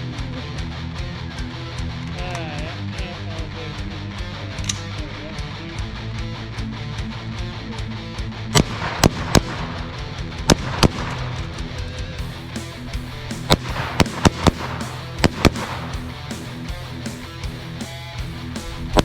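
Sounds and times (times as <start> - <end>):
rock music with electric guitar: 0.0 - 19.0
gunshots: 8.5 - 11.5, 13.2 - 16.5.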